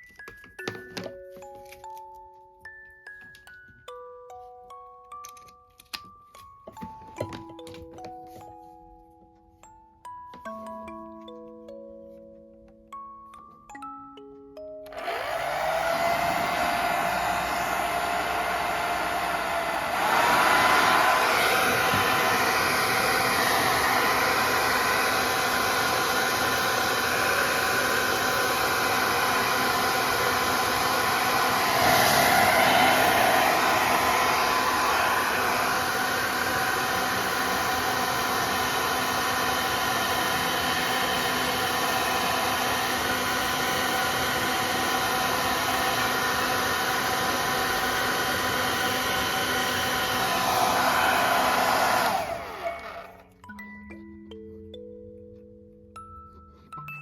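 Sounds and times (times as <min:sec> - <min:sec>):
hair dryer running: 0:14.9 - 0:53.4.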